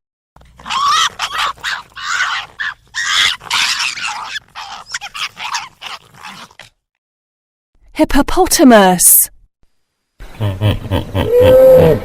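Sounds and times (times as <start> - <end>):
fox yelping and barking: 0.4 - 6.7.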